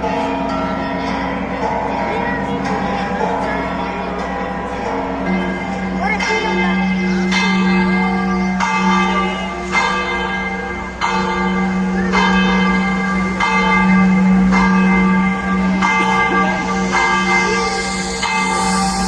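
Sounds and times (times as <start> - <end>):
church bell ringing: 0.0 - 19.0
steady deep hum: 10.4 - 19.0.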